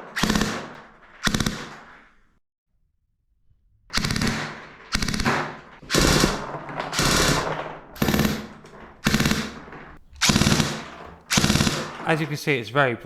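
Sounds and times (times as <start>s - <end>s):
airsoft pistol full-auto bursts: 0.0s - 2.0s, 4.0s - 12.2s.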